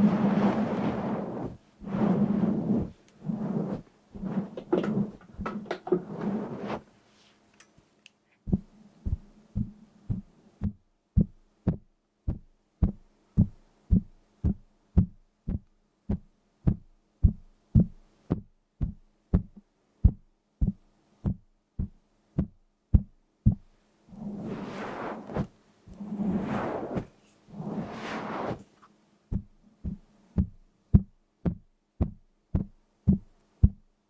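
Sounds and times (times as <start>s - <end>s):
dull low knocks: 8.5s - 23.8s, 29.3s - 33.9s.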